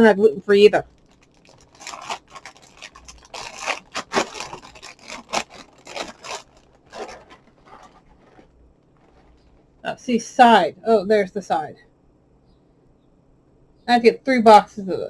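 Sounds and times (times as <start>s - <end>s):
cardboard box scraping and rubbing: 3.3s - 9.4s.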